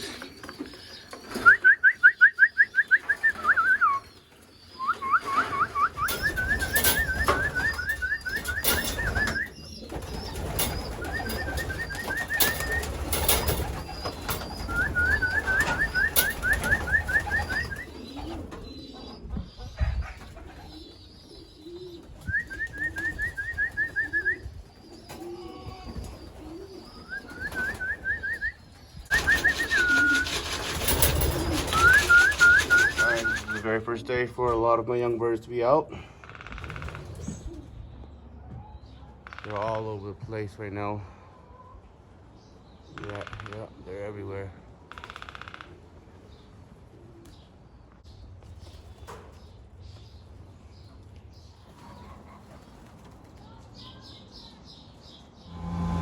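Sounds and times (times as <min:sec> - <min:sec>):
pigeons cooing: 0:00.0 - 0:34.6, 0:35.9 - 0:38.4
pigeons peeping rapidly: 0:00.0 - 0:35.7, 0:36.5 - 0:40.2, 0:41.7 - 0:55.6
wing flaps: 0:05.1 - 0:18.5, 0:29.1 - 0:33.6.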